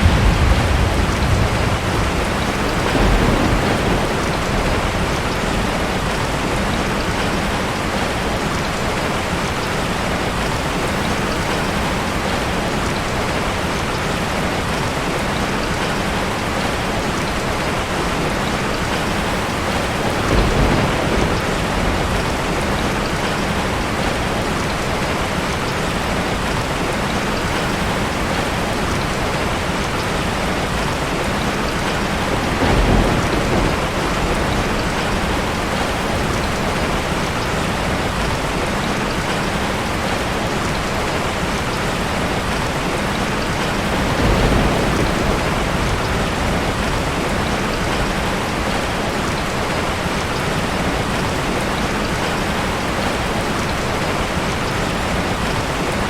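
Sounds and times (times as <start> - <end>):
low rumbles of thunder: 0.0 - 8.0, 18.8 - 24.8, 27.5 - 40.2, 41.8 - 51.6
heavy rain: 0.0 - 56.0.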